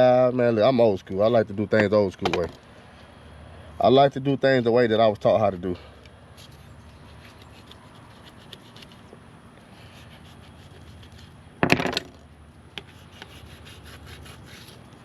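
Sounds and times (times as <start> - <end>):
knife scraping fish: 6.4 - 9.1, 9.7 - 11.4, 12.8 - 14.8.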